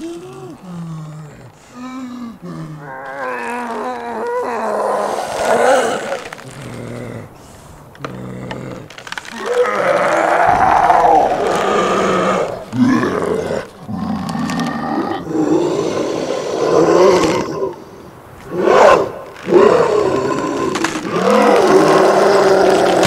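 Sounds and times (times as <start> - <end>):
beastly growls and roars: 0.0 - 23.0.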